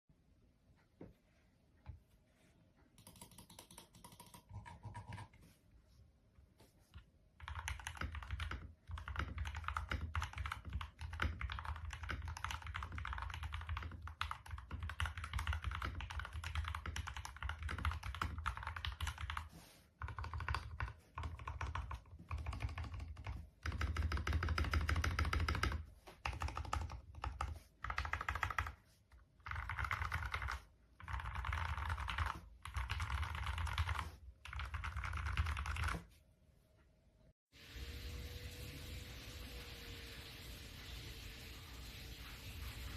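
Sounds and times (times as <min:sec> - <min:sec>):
typing on mechanical keyboard: 0:03.0 - 0:05.3, 0:07.4 - 0:28.8, 0:29.4 - 0:36.1.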